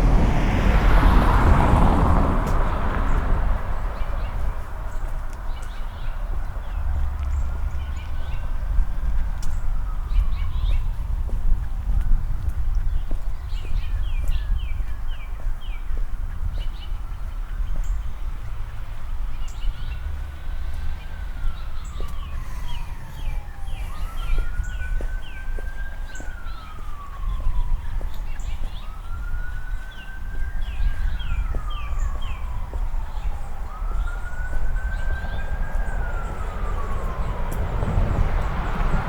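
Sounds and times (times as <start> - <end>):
low rumble: 0.0 - 5.2
emergency vehicle siren wailing: 0.0 - 12.8, 13.7 - 39.0.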